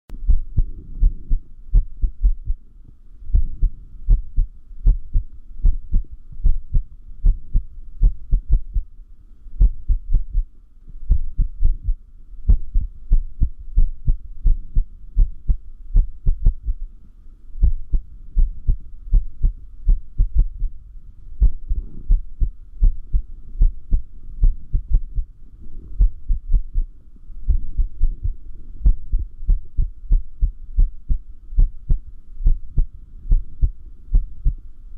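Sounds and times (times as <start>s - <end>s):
irregular heartbeat thumps: 0.2s - 2.6s, 3.3s - 8.9s, 9.6s - 16.8s, 17.6s - 20.8s, 21.4s - 25.3s, 25.9s - 26.9s, 27.5s - 34.6s.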